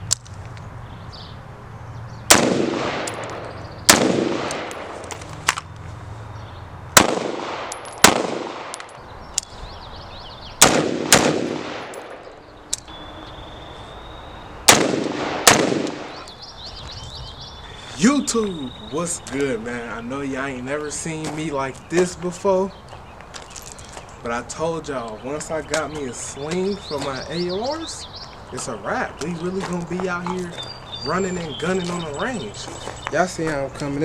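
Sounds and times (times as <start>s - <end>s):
echoing gunshots: 2.3s - 5.2s, 6.9s - 9.0s, 10.6s - 12.4s, 14.6s - 16.3s.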